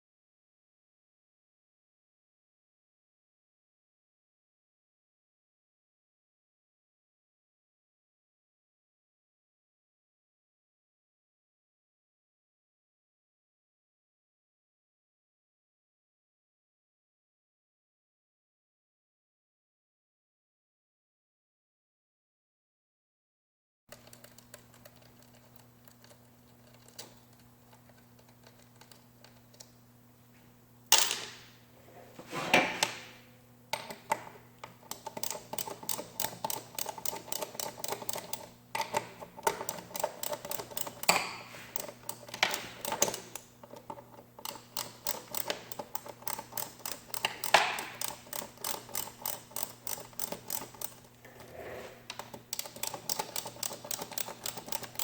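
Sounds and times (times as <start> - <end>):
hand tool clicks on metal: 33.8 - 51.1.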